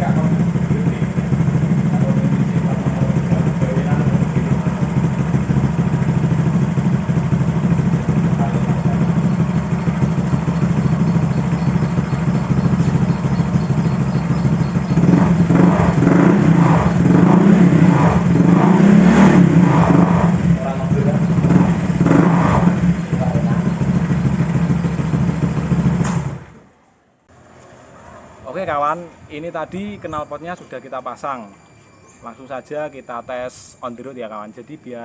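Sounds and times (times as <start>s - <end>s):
scooter engine idling: 0.0s - 26.7s, 27.3s - 35.0s.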